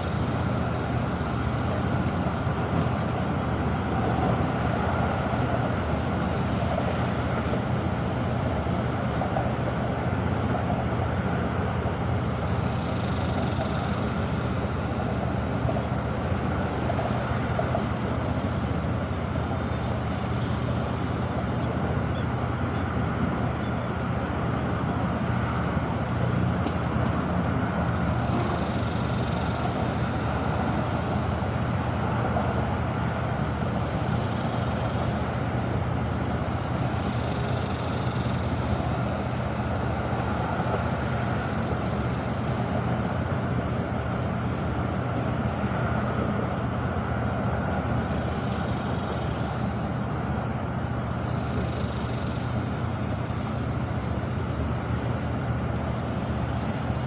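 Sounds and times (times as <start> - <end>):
even hiss: 19.6 - 22.1, 32.9 - 42.5, 47.7 - 54.6.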